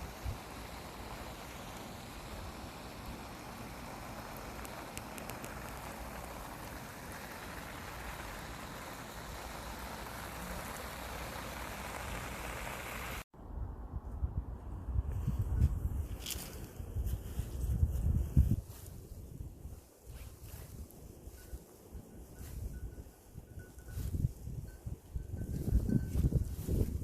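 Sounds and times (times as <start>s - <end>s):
falling water hissing: 0.0s - 13.3s.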